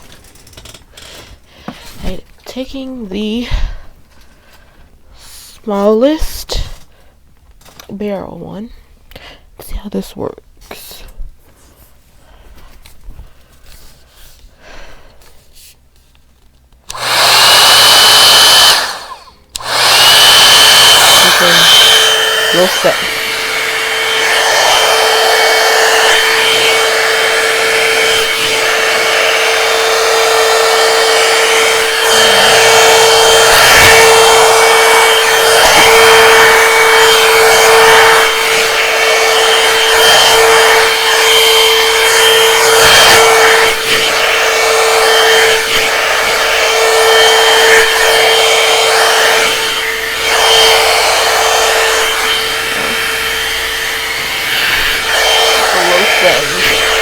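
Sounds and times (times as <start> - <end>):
blow-dryer motor whine and air rush: 0.9 - 7.0, 16.8 - 57.0
brush rubbing through hair: 41.9 - 57.0.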